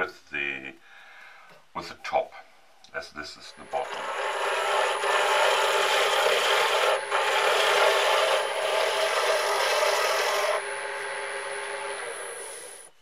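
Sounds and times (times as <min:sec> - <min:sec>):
lathe tool scraping hiss: 0:03.5 - 0:13.0
wood lathe hum: 0:03.6 - 0:13.0.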